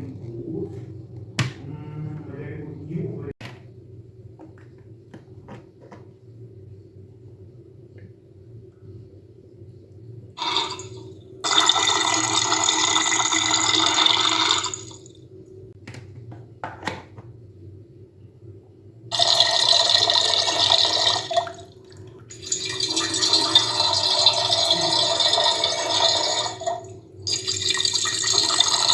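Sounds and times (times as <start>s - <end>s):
faint steady hum: 0.0s - 28.9s
water dispenser pouring: 10.4s - 15.1s, 19.1s - 28.9s.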